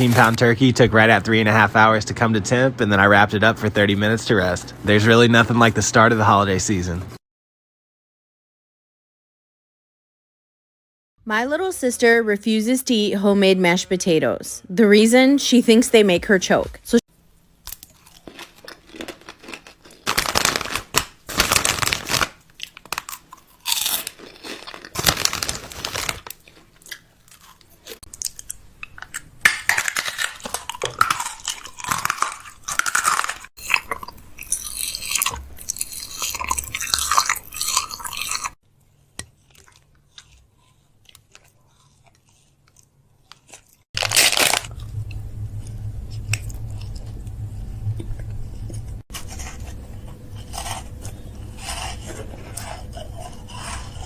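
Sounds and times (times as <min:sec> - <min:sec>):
food crunching: 0:17.6 - 0:47.4, 0:48.0 - 0:54.0
steady low hum: 0:38.7 - 0:54.0.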